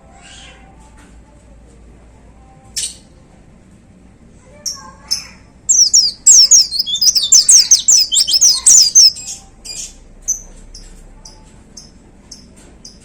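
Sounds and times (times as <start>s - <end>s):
bird singing high notes: 5.7s - 9.2s
bird chirps: 5.7s - 10.5s.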